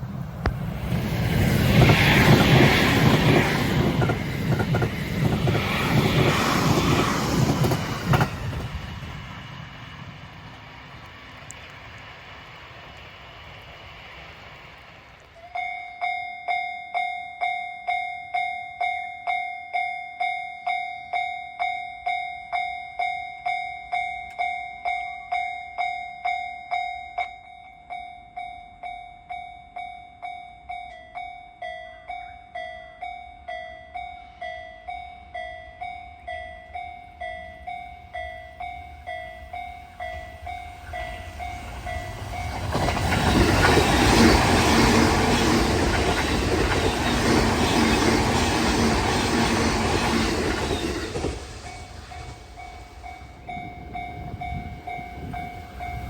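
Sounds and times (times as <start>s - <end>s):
approaching train rumble: 0.0s - 16.2s, 34.2s - 56.0s
level-crossing alarm bell: 15.5s - 56.0s.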